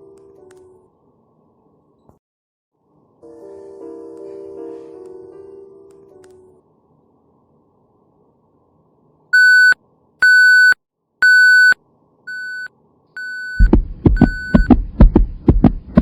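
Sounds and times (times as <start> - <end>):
patient monitor beeping: 9.4 - 14.8
thumping heartbeat sound effect: 13.5 - 16.0.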